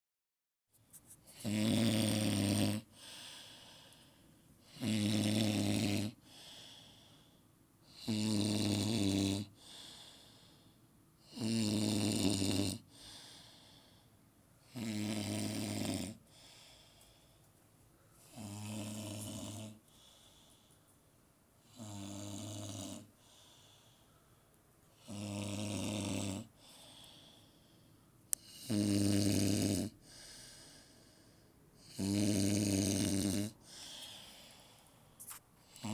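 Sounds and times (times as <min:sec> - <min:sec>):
man snoring: 0:01.3 - 0:03.7, 0:04.6 - 0:06.9, 0:07.9 - 0:10.3, 0:11.2 - 0:13.6, 0:14.7 - 0:16.2, 0:18.3 - 0:19.8, 0:21.6 - 0:23.1, 0:25.0 - 0:27.4, 0:28.4 - 0:30.9, 0:31.8 - 0:34.6, 0:35.7 - 0:35.9
soft breathing: 0:02.8 - 0:04.7, 0:06.2 - 0:07.6, 0:09.6 - 0:11.0, 0:12.9 - 0:14.3, 0:16.2 - 0:21.3, 0:23.0 - 0:25.0, 0:26.5 - 0:28.2, 0:30.0 - 0:31.8, 0:33.6 - 0:35.9.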